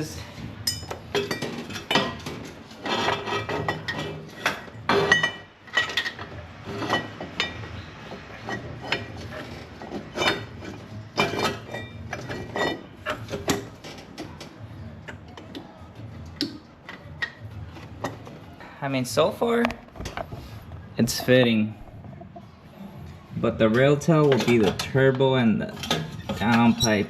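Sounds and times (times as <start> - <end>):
metal clinks and scrapes: 0.6 - 14.4.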